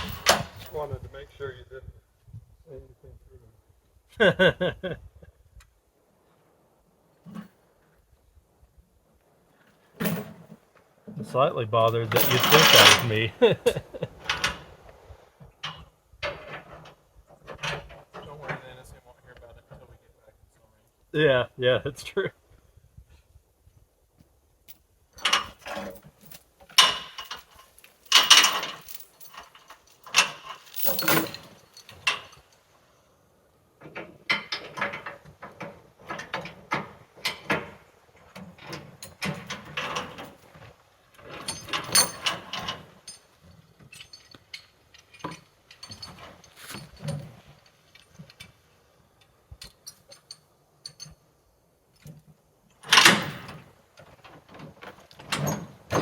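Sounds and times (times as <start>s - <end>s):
metal gear clanking: 0.0s - 0.8s, 10.0s - 10.3s, 11.8s - 13.4s, 25.2s - 32.5s, 41.3s - 43.3s, 52.9s - 53.6s.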